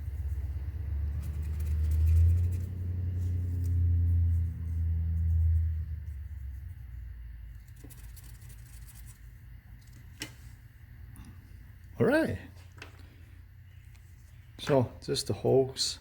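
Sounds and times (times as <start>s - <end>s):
vehicle engine drone: 0.0s - 9.6s
quiet low rumble: 0.0s - 12.2s.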